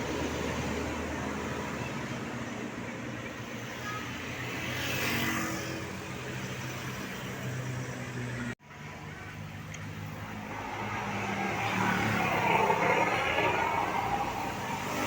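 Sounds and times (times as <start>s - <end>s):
traffic engine drone: 0.0s - 15.0s
vehicle passing by: 10.2s - 15.0s.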